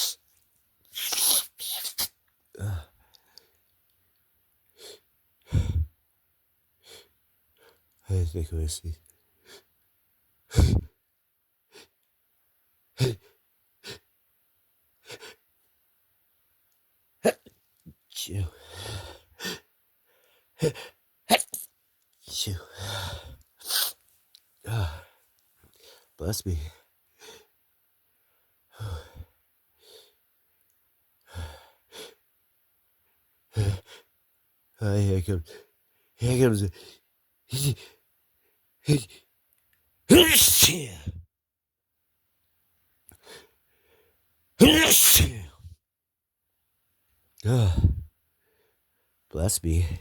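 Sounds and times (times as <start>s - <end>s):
stifled sneezes: 0.0s - 0.2s, 0.9s - 2.8s, 10.5s - 10.9s, 17.2s - 17.5s, 20.6s - 21.7s, 22.3s - 24.0s, 40.1s - 41.2s, 44.6s - 45.7s
short breathy huffs: 10.5s - 10.9s.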